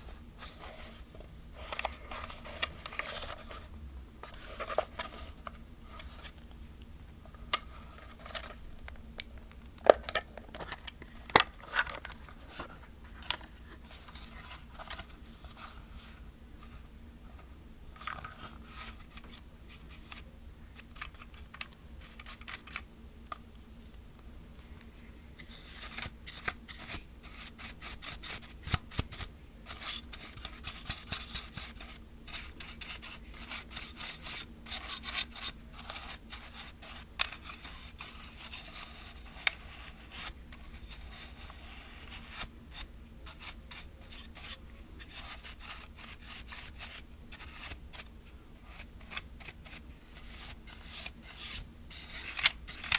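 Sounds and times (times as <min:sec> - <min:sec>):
brush sweeping plastic: 0:18.0 - 0:22.8, 0:24.9 - 0:52.9.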